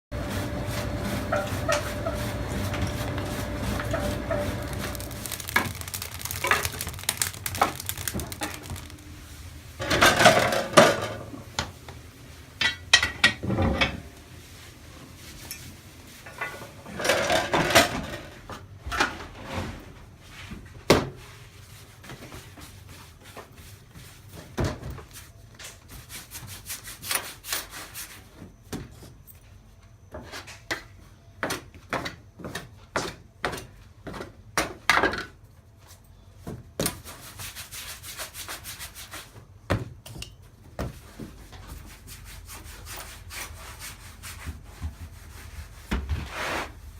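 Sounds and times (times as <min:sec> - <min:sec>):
scraping and rubbing on wood: 0:00.2 - 0:09.0.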